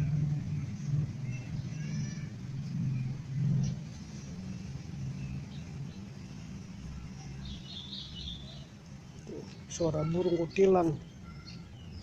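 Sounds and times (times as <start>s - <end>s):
motor vehicle engine humming: 0.0s - 12.0s
bird chirps: 5.1s - 12.0s.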